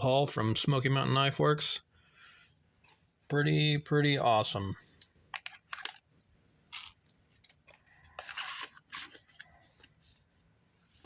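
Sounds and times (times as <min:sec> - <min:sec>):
packaging rustling and crinkling: 0:06.7 - 0:10.0.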